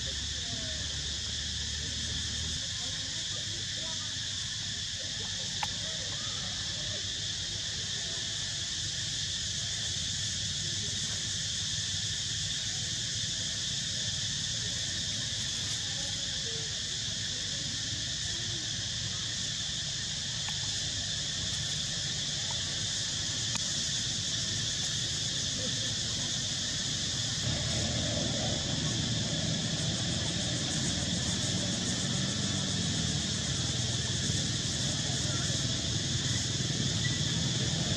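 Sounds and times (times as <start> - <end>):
insects buzzing: 0.0 - 37.9
low outdoor rumble: 19.9 - 37.9.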